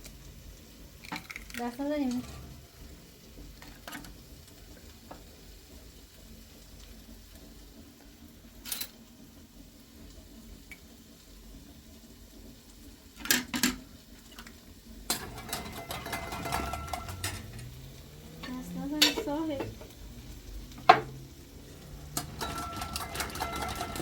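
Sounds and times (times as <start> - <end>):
food sizzling in a pan: 0.0 - 24.0
pots and utensils clinking: 1.0 - 2.9, 8.6 - 9.0, 13.2 - 24.0.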